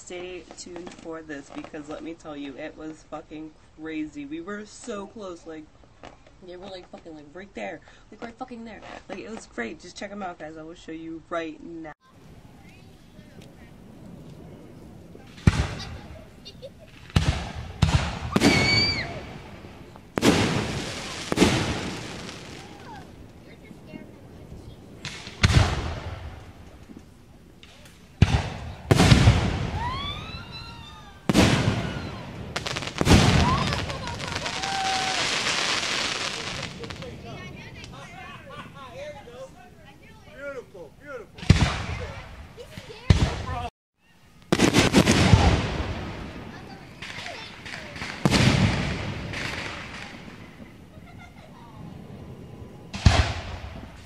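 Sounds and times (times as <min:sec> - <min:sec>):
fireworks booming: 0:12.0 - 0:40.3, 0:41.3 - 0:43.7, 0:44.5 - 0:54.0
firework crackles: 0:12.0 - 0:43.7, 0:44.3 - 0:54.0
firework whistling: 0:12.2 - 0:38.8.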